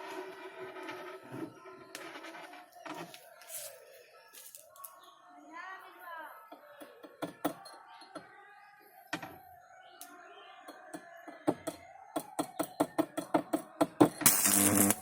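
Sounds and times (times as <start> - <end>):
crackling welding arc: 14.2 - 15.0
welding electrode snapping clicks: 14.3 - 15.0.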